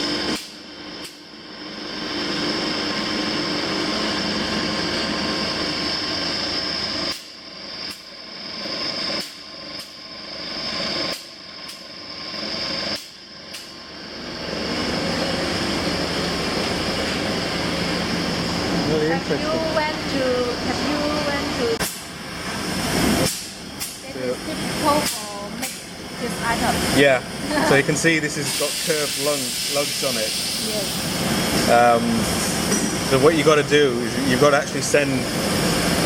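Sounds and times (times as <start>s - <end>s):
workshop machine high whine: 0.0s - 36.0s.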